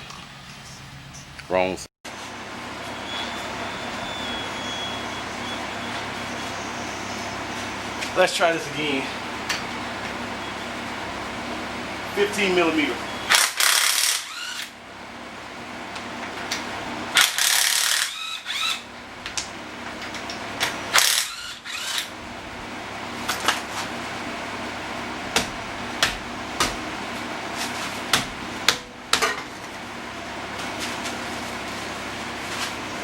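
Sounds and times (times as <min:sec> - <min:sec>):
ratchet clicks: 0:13.3 - 0:14.7, 0:17.2 - 0:18.8.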